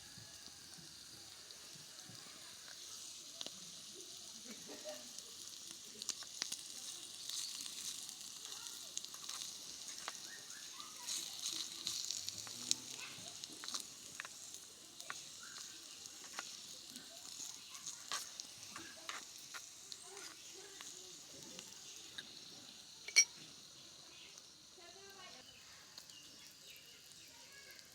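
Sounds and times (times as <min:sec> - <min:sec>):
food sizzling in oil: 0:00.0 - 0:27.9.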